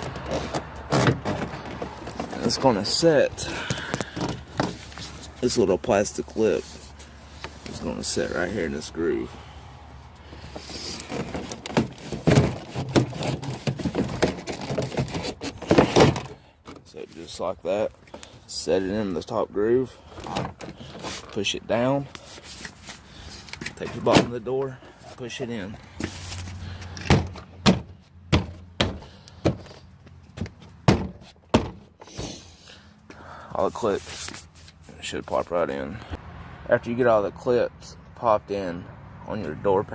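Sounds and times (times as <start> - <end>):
plastic panel knocking and scraping: 0.0 - 2.6, 3.6 - 5.2, 10.5 - 16.8, 27.0 - 31.9.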